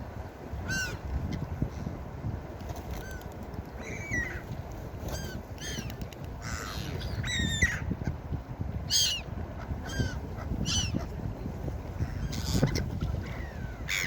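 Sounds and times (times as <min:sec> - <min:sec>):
gulls calling: 0:00.6 - 0:01.5, 0:03.0 - 0:08.2, 0:08.8 - 0:11.2, 0:12.0 - 0:14.0.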